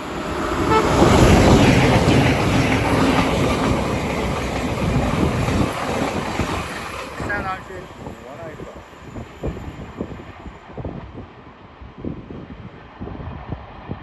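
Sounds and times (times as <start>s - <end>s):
train wheels clattering over rails: 0.0s - 10.4s.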